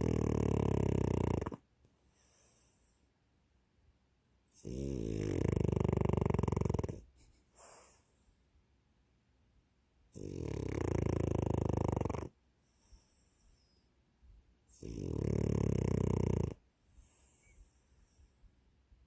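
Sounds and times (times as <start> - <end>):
dog snoring: 0.0 - 2.8, 4.5 - 7.1, 10.1 - 13.2, 14.7 - 18.2
soft dog breath: 1.9 - 3.2, 7.0 - 8.5, 12.5 - 14.0, 16.7 - 18.8.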